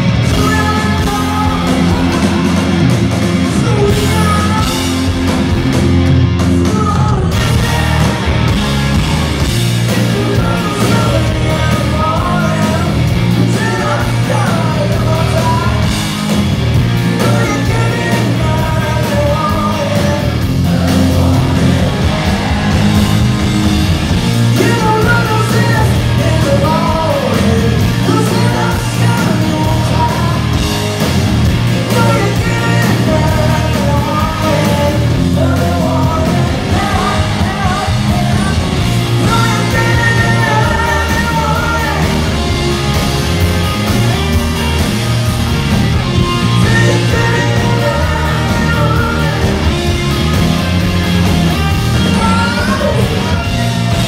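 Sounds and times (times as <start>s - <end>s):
live rock band playing loudly: 0.0s - 54.0s
woman singing lead vocal: 3.5s - 4.9s, 9.9s - 15.8s, 24.6s - 30.5s, 31.9s - 42.2s, 46.5s - 49.7s, 52.0s - 53.7s.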